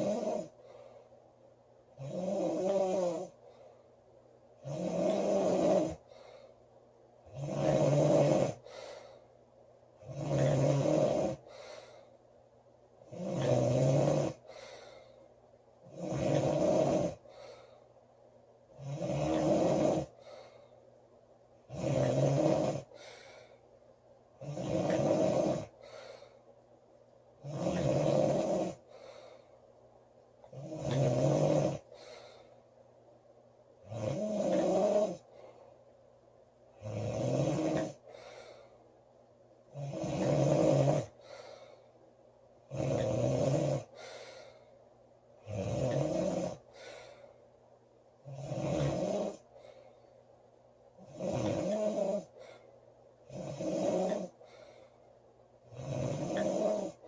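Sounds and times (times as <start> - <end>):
woman snoring: 0.0 - 0.6, 2.0 - 3.4, 4.6 - 6.0, 7.3 - 8.9, 10.0 - 11.6, 13.0 - 14.7, 15.8 - 17.6, 18.8 - 20.2, 21.7 - 23.6, 24.4 - 26.4, 27.4 - 28.9, 30.5 - 32.4, 33.8 - 35.3, 36.8 - 38.7, 39.7 - 41.5, 42.7 - 44.6, 45.4 - 47.2, 48.2 - 49.5, 51.0 - 52.6, 53.2 - 54.4, 55.7 - 57.0
faint breath sound: 0.0 - 1.5, 3.2 - 4.2, 5.5 - 6.9, 8.3 - 9.6, 11.3 - 12.4, 14.3 - 15.6, 17.0 - 18.2, 20.0 - 21.2, 22.7 - 24.1, 25.4 - 26.8, 28.4 - 30.6, 31.8 - 33.0, 35.1 - 36.1, 37.8 - 39.1, 41.0 - 42.2, 43.8 - 45.1, 46.4 - 50.8, 51.6 - 55.4.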